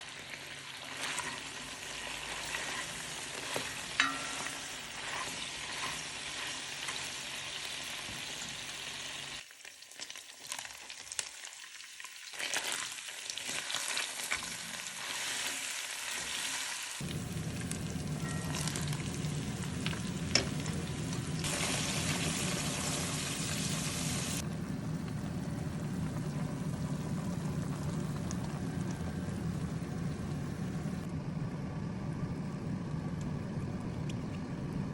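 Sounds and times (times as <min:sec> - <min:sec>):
food sizzling in hot oil: 0:00.0 - 0:24.4.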